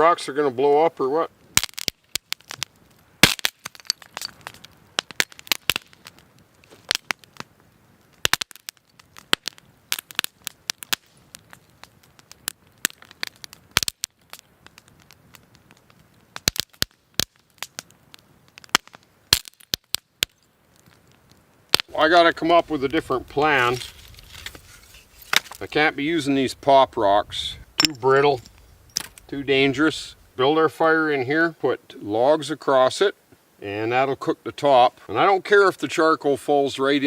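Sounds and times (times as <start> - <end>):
campfire crackling: 0.0 - 37.0
rocks cracking and exploding: 1.4 - 30.6.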